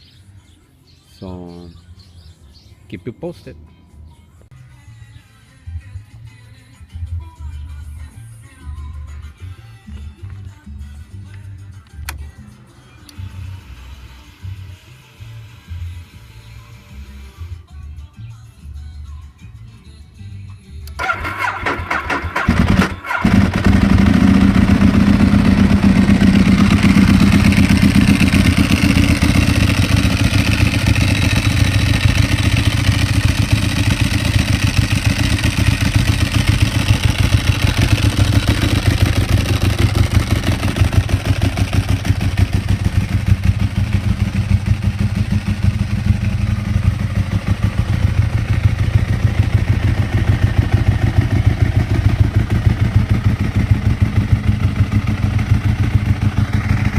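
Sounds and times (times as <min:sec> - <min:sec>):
motorcycle engine starting and idling: 0:20.8 - 0:56.9.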